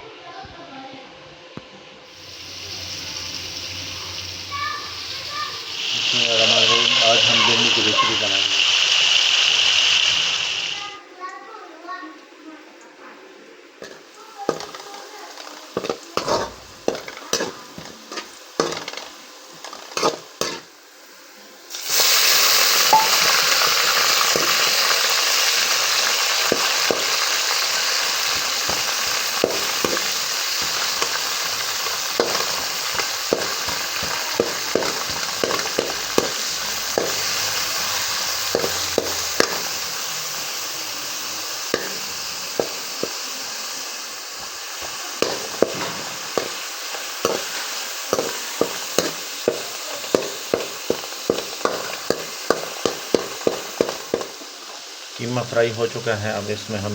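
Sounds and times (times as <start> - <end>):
meat sizzling in a pan: 2.1 - 11.0, 13.6 - 56.9
spoon scraping a pan: 13.8 - 20.7.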